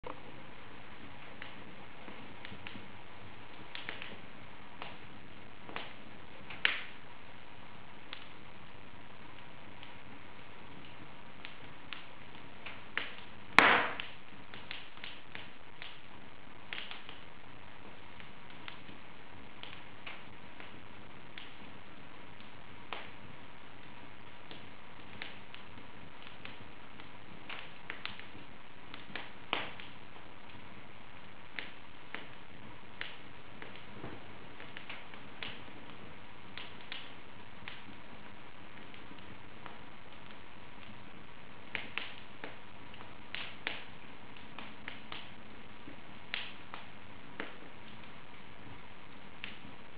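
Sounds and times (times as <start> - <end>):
wood fire crackling: 0.0 - 49.9
loud pop of fire: 5.7 - 7.0, 11.4 - 16.1, 27.4 - 30.0, 43.3 - 45.3, 46.3 - 48.0.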